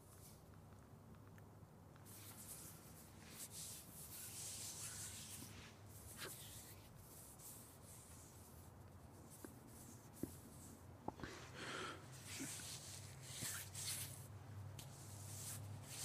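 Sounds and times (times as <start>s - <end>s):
hands rubbing together: 2.1s - 10.8s, 12.1s - 16.0s.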